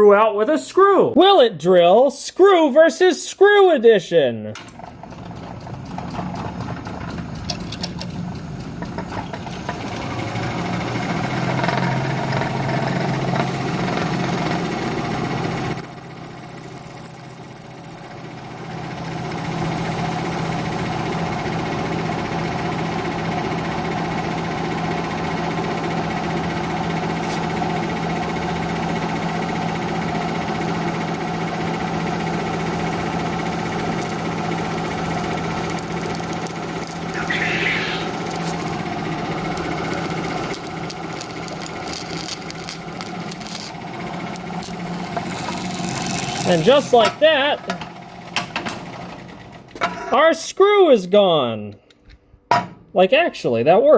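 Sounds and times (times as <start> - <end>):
high squeal: 37.1 - 38.2.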